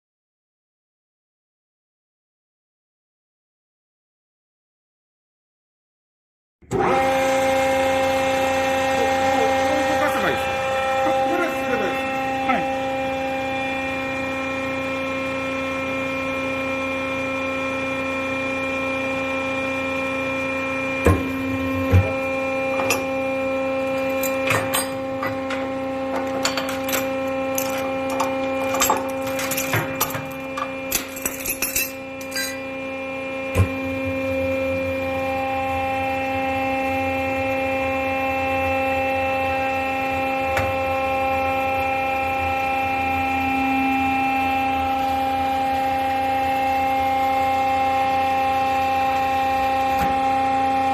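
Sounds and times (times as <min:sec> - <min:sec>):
scrap press motor hum: 0:06.7 - 0:50.9.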